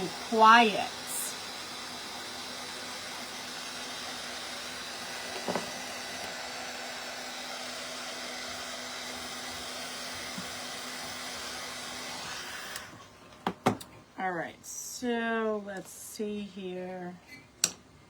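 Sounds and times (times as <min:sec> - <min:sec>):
hot-air dryer blowing: 0:00.0 - 0:13.5.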